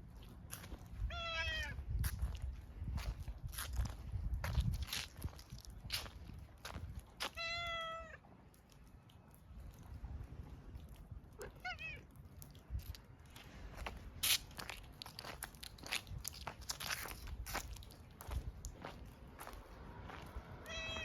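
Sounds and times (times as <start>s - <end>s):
cat meowing: 1.1s - 1.8s, 7.3s - 8.2s, 11.4s - 12.1s, 20.6s - 21.0s.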